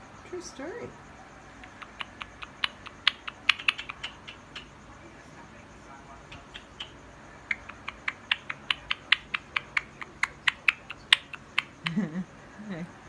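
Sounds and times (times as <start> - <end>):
parrot making sharp clicks: 1.6 - 4.8, 6.3 - 12.0.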